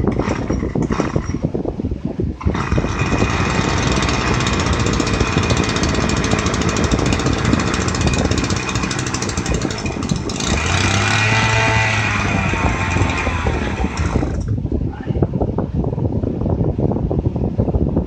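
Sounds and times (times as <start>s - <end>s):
small pump engine running: 0.0s - 1.4s, 2.4s - 14.5s.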